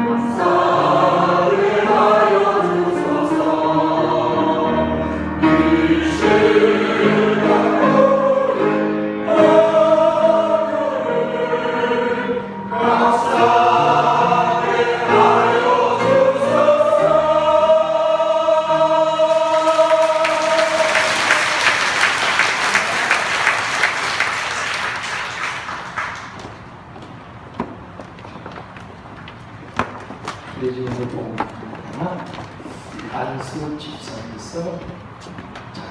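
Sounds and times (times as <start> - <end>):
choir singing a hymn: 0.0 - 23.9
applause: 19.7 - 26.5.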